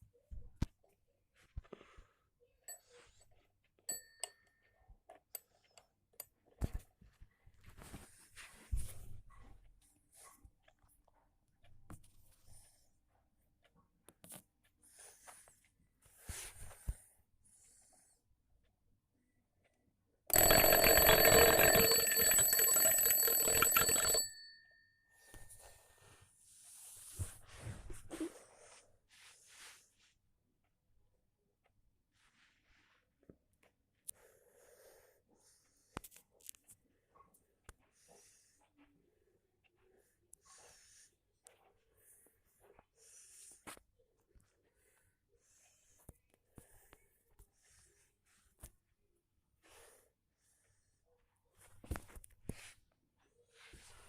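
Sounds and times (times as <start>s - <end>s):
alarm clock clicks and knocks: 20.3s - 24.3s
short bell-like rings: 20.3s - 24.9s.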